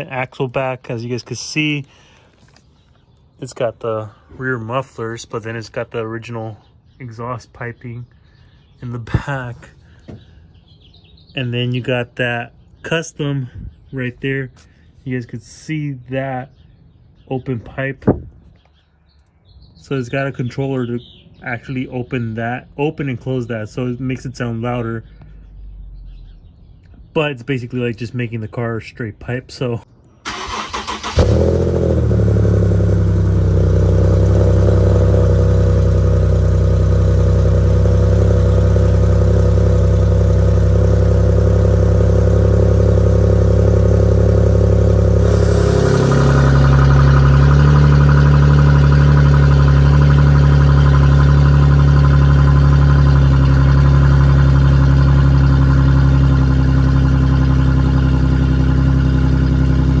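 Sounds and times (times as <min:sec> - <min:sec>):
car engine starting and idling: 0:30.2 - 1:00.0.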